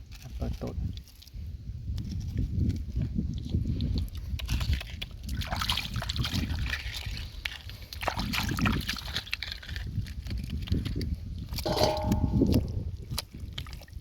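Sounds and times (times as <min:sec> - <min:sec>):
hands splashing through mud and water: 0:04.0 - 0:14.0.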